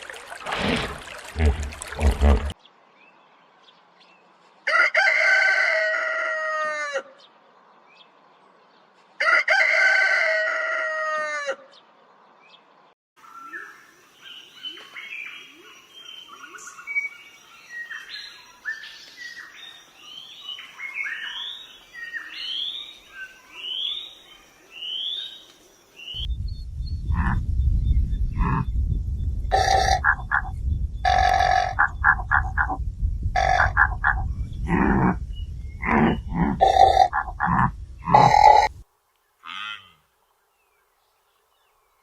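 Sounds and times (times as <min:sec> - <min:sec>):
songbird singing: 0:01.3 - 0:04.6, 0:07.1 - 0:09.1, 0:11.7 - 0:42.0
rooster crowing: 0:04.7 - 0:07.2, 0:09.2 - 0:11.7
low rumbling noise: 0:26.2 - 0:38.8.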